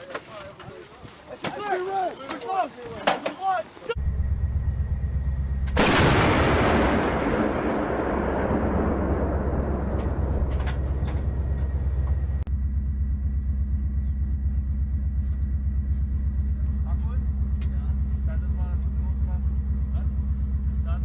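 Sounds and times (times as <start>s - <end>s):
low engine rumble: 3.9s - 21.0s
artillery gun firing: 5.7s - 11.6s.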